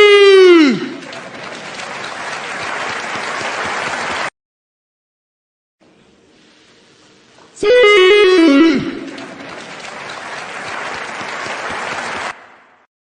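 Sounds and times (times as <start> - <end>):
pitch-shifted man shouting: 0.0 - 1.0, 7.6 - 9.3
crowd applause and cheering: 0.0 - 4.3, 8.3 - 12.8.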